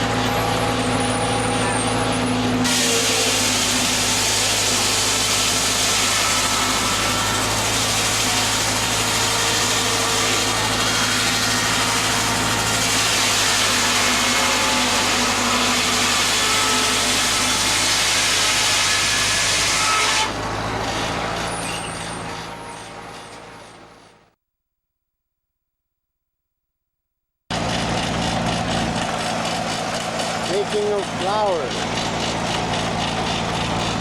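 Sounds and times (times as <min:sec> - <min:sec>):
mill machinery running: 0:00.0 - 0:24.2, 0:27.5 - 0:34.0.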